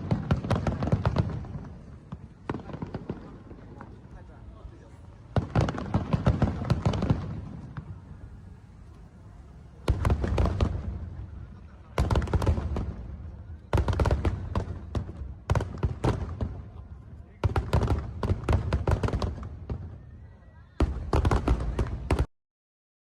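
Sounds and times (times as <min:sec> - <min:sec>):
firework crackle: 0:00.0 - 0:22.3
firework shells booming: 0:05.3 - 0:08.2, 0:09.8 - 0:16.8, 0:17.4 - 0:20.0, 0:20.8 - 0:22.3.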